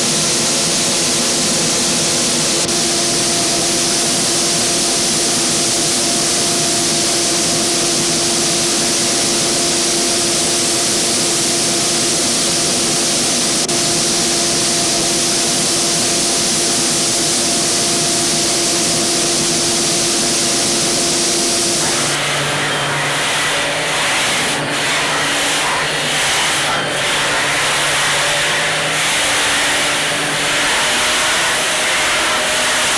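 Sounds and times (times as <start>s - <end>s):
sanding machine running: 18.0s - 32.9s.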